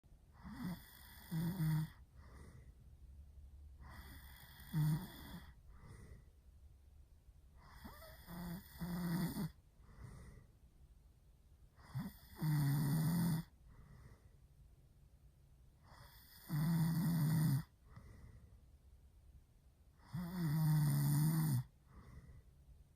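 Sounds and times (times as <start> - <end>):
man snoring loudly: 0.4 - 2.0, 3.8 - 5.5, 7.7 - 9.5, 11.9 - 13.5, 16.0 - 17.7, 20.1 - 21.7
soft breath: 1.9 - 3.1, 3.8 - 6.6, 9.5 - 10.8, 13.4 - 14.6, 17.6 - 18.8, 21.6 - 22.9.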